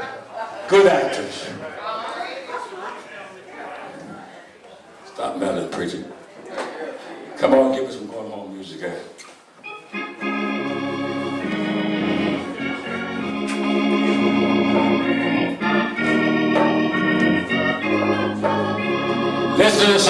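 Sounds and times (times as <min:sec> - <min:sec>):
electric organ playing slow chords: 0:09.6 - 0:20.0.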